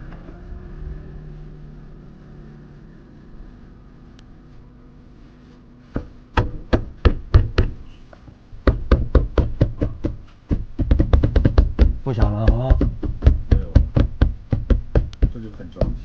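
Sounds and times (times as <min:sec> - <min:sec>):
hand knocking on car door panel: 0:06.0 - 0:07.8, 0:08.6 - 0:16.0.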